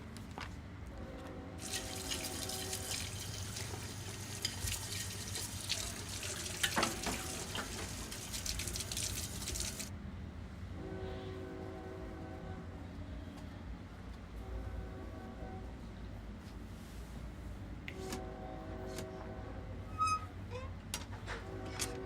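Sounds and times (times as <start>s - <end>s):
running splashing water: 1.6s - 9.9s.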